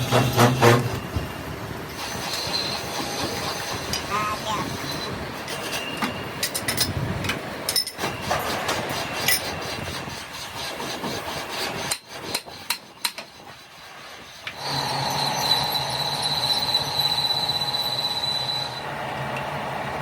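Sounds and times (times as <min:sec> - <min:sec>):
knocks and scraping on metal: 0:00.0 - 0:01.3, 0:04.8 - 0:13.7.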